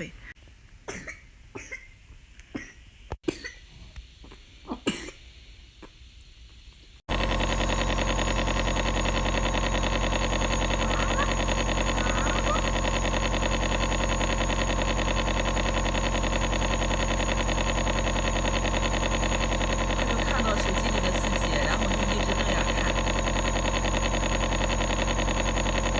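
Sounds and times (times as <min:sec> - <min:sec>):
nebulizer mechanical buzz: 0:07.1 - 0:25.9.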